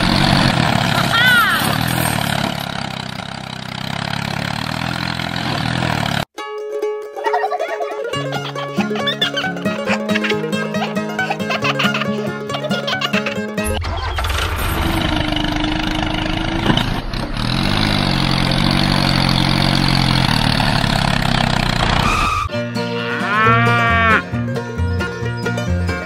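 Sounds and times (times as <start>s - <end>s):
vehicle engine rumbling: 0.0s - 6.3s, 8.3s - 22.5s
cow mooing: 22.8s - 24.3s.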